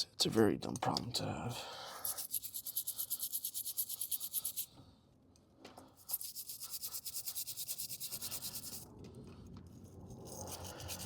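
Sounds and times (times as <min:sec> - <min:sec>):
small brush scrubbing connector pins: 0:02.0 - 0:04.7, 0:06.0 - 0:08.8.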